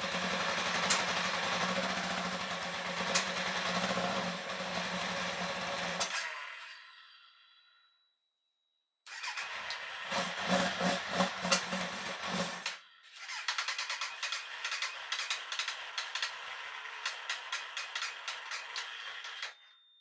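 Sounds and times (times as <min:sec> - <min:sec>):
motorcycle electric starter cranking: 0:00.0 - 0:06.6, 0:09.1 - 0:19.7
rapid clicks: 0:11.2 - 0:19.5.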